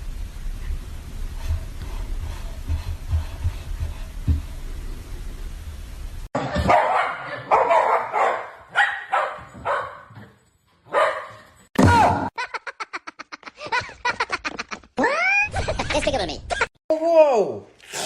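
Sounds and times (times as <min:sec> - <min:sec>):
dog barking: 0:06.4 - 0:10.3, 0:10.9 - 0:11.4.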